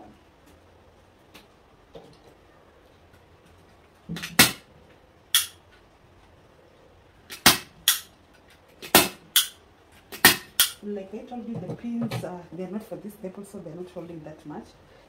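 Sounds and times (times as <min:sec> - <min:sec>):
staple gun snapping: 0:07.3 - 0:08.1, 0:08.8 - 0:09.6, 0:10.2 - 0:10.8.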